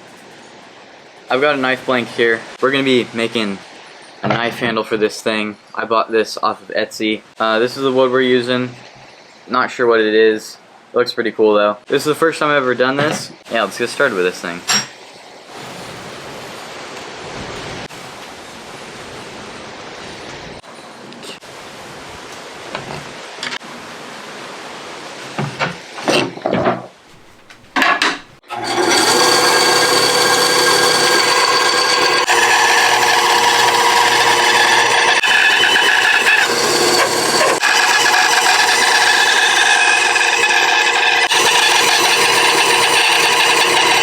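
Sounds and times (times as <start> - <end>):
power tool motor whine: 28.5 - 44.0.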